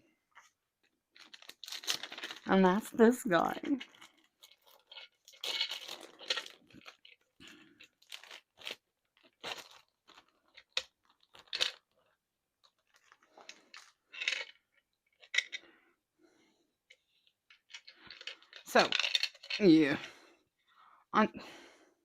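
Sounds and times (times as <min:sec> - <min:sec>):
packaging rustling and crinkling: 0:01.1 - 0:02.5, 0:03.7 - 0:15.5.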